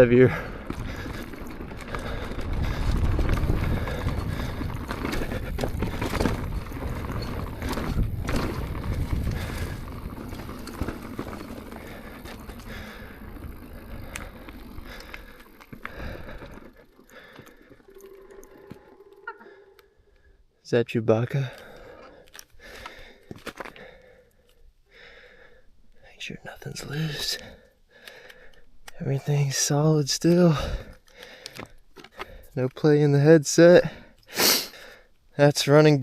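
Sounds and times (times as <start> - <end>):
bike tyres rolling over rocks: 0.0 - 19.0
wind on the microphone: 2.1 - 10.5.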